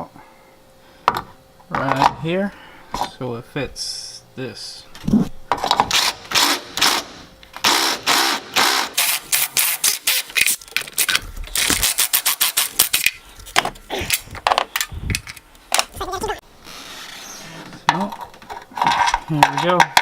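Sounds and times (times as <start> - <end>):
tool grinding and rattling: 16.7 - 20.0.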